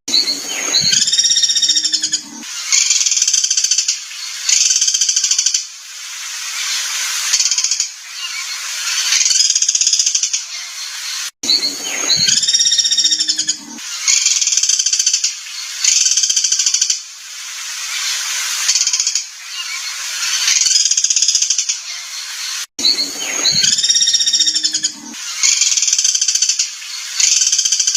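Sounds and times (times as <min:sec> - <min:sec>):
songbird buzzy trills: 0:00.1 - 0:05.7, 0:06.4 - 0:17.1, 0:17.8 - 0:27.9
lower bird call: 0:09.2 - 0:14.4, 0:21.5 - 0:25.8.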